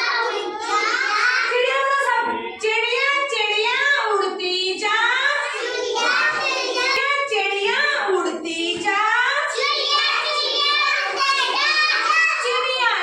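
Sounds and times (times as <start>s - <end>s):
children singing: 0.0s - 1.6s, 5.2s - 7.1s, 9.4s - 12.7s.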